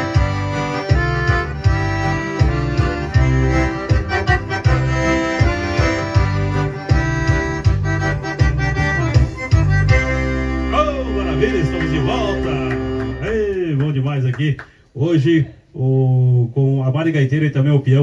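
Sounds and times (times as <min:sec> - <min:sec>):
accordion playing: 0:00.0 - 0:13.8
steady bass beat: 0:00.0 - 0:14.2.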